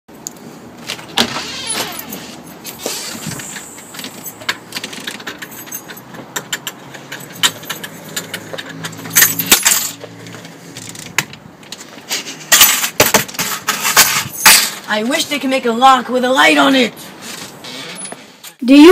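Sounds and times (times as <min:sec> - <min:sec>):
keys jangling in a door lock: 0:04.0 - 0:08.4.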